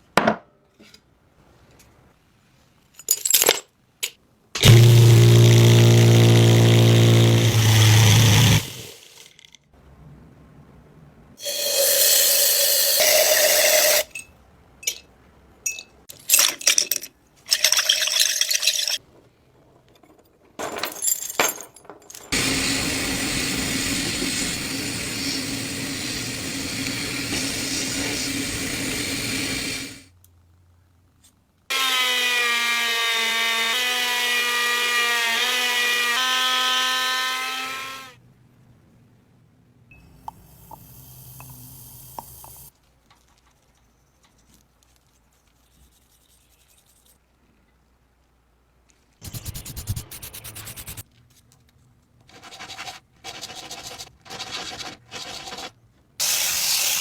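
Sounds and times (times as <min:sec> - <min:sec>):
motor whining: 0:04.6 - 0:09.0
power tool running: 0:04.6 - 0:09.2, 0:22.4 - 0:30.0, 0:49.2 - 0:51.0
scraping or sawing noise: 0:49.2 - 0:51.0.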